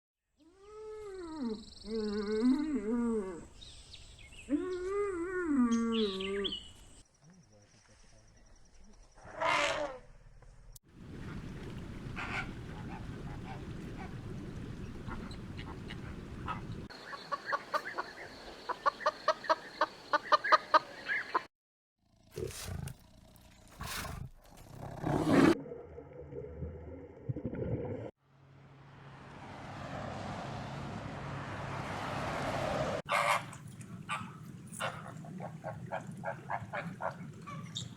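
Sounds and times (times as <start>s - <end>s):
animal calls: 11.4s - 21.5s, 33.1s - 37.9s.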